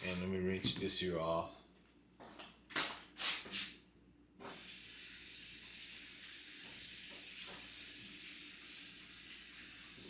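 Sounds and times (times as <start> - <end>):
faucet water running into sink: 4.5 - 10.0.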